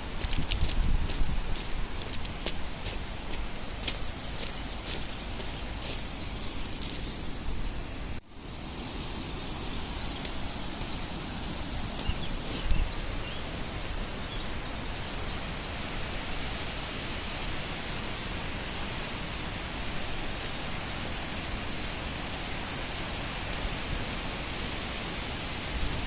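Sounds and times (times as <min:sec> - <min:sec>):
stream water flowing: 0:00.0 - 0:26.0
faint bird chirps: 0:09.8 - 0:15.4.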